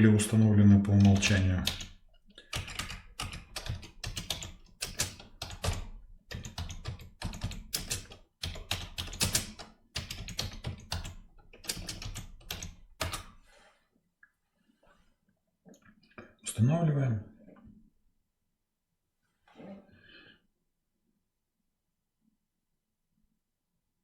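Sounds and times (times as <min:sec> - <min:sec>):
typing on a keyboard: 0:00.8 - 0:13.4.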